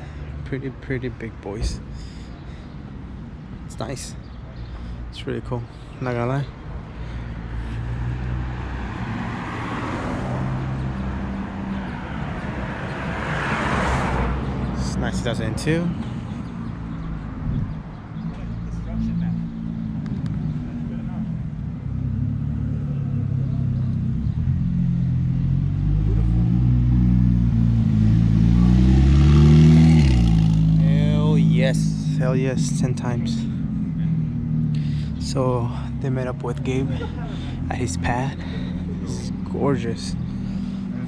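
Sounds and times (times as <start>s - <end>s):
outdoor traffic noise: 0.0s - 41.0s
car engine accelerating: 18.2s - 41.0s
car engine idling: 30.8s - 41.0s.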